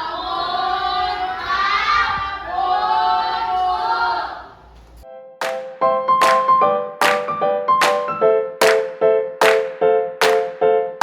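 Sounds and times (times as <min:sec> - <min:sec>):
children chanting in unison: 0:00.0 - 0:04.6
piano note: 0:05.0 - 0:11.0.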